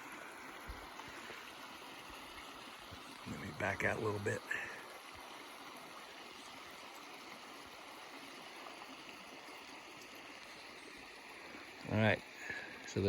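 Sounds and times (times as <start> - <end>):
water running down channel: 0.0 - 13.0.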